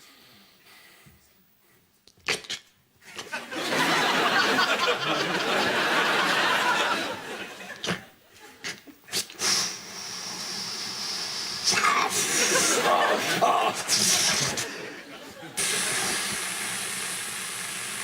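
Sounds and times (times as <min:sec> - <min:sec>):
studio audience laughing: 0:03.2 - 0:08.6, 0:12.1 - 0:16.4
mouth-made sound effects: 0:07.8 - 0:15.0, 0:15.6 - 0:17.9.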